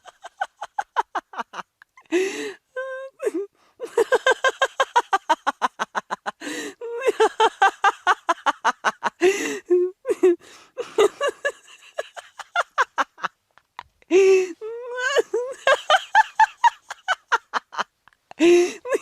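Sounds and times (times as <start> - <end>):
woman laughing hard: 0.0 - 19.0
gasping in-breaths: 2.0 - 3.8, 6.4 - 6.8, 9.2 - 9.7, 10.4 - 10.9, 14.1 - 14.7, 18.3 - 19.0.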